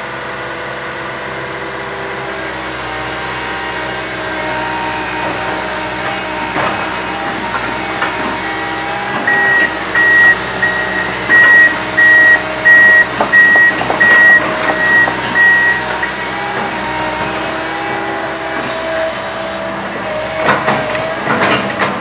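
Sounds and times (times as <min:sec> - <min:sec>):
excavator engine running: 0:00.0 - 0:22.0
warning alarm beeping: 0:09.3 - 0:16.2.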